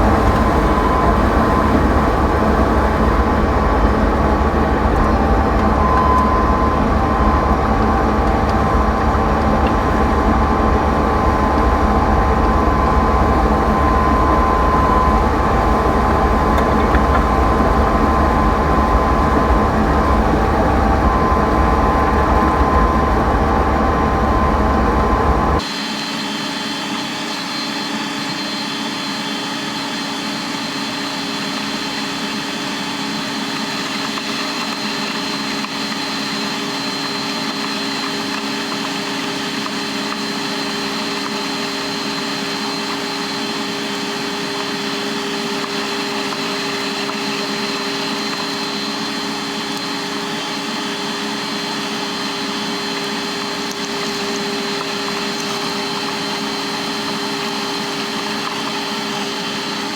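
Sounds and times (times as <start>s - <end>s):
combine harvester drone: 0.0s - 59.9s
machine whine: 0.0s - 59.9s.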